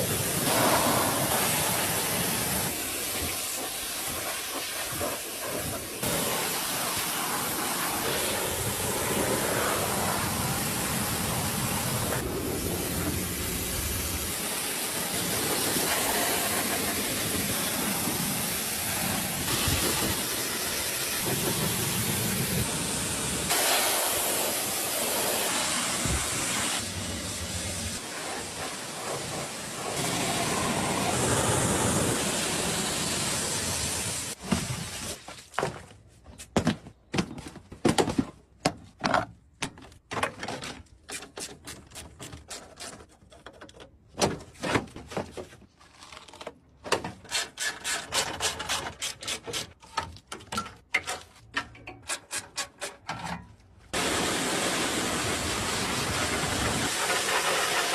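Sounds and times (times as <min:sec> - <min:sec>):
pressure washer spray hissing: 0:00.0 - 0:34.4, 0:54.0 - 0:57.9.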